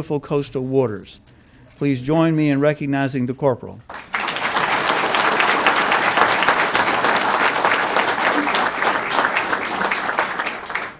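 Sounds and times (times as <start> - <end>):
audience applauding: 3.9 - 10.9.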